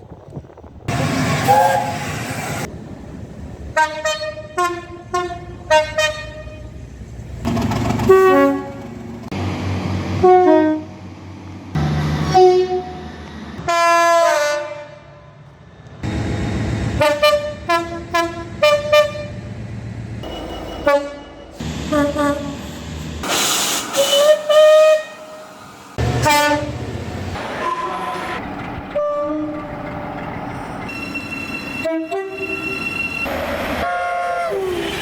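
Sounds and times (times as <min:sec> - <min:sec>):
low train rumble: 0:00.0 - 0:35.0
two-tone train horns: 0:00.9 - 0:02.4, 0:03.8 - 0:06.8, 0:07.9 - 0:09.0, 0:10.1 - 0:11.0, 0:11.8 - 0:15.4, 0:17.0 - 0:19.5, 0:20.2 - 0:22.7, 0:23.9 - 0:26.9, 0:27.5 - 0:29.7, 0:30.9 - 0:35.0.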